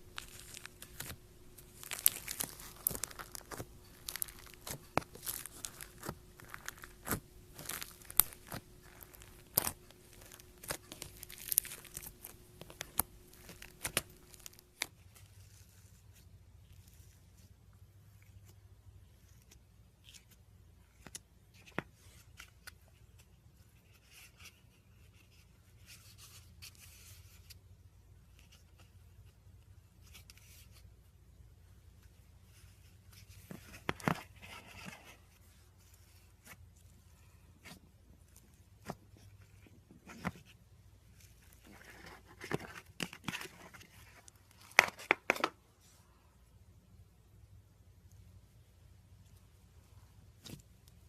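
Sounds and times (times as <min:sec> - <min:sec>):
hands working slime: 0:00.0 - 0:27.7, 0:28.3 - 0:46.3.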